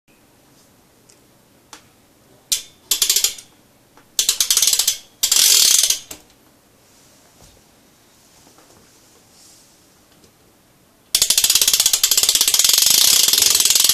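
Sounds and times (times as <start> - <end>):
bicycle hub ratcheting clicks: 2.5 - 3.5, 4.2 - 6.2, 11.1 - 13.9.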